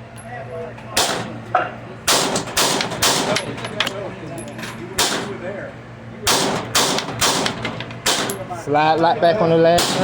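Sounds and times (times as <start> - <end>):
pistol gunshots: 1.0 - 1.4, 2.1 - 3.4, 5.0 - 5.3, 6.3 - 8.4, 9.8 - 10.0.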